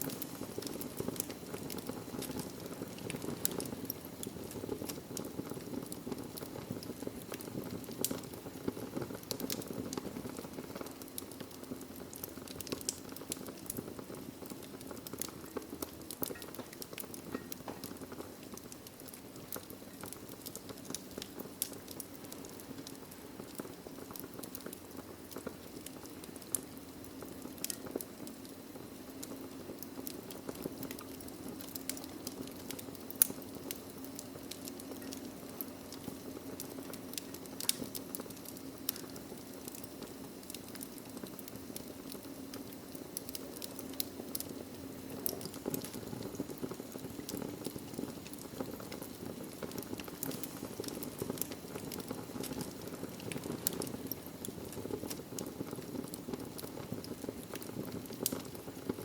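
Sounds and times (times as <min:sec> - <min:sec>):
logs crackling and popping: 0:00.0 - 0:59.0
low rush of flame: 0:00.0 - 0:59.0.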